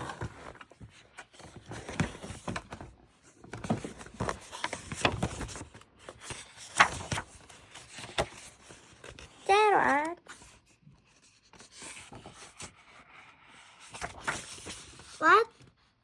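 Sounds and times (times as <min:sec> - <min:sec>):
paper rustling: 0:00.0 - 0:15.7.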